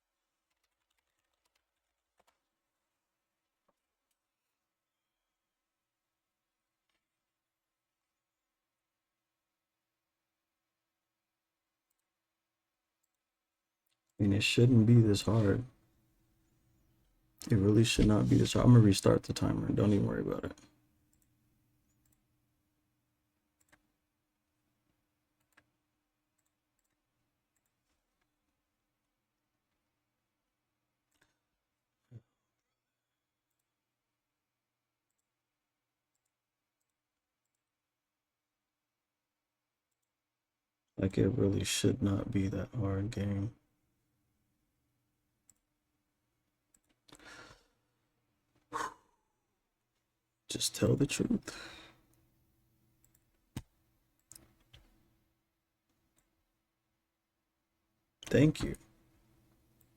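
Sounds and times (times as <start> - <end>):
faint clicks: 0.4 - 2.5, 20.6 - 22.2, 23.6 - 23.9, 26.4 - 28.4, 45.5 - 45.7, 53.0 - 54.9
short breathy sound: 48.7 - 49.2.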